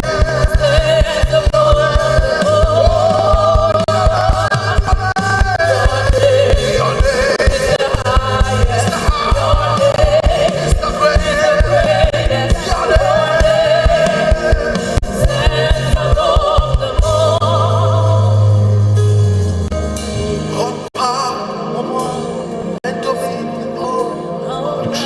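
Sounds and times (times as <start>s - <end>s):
drum beat: 0.0s - 17.4s
voices singing together: 0.0s - 18.8s
bass: 0.0s - 21.3s.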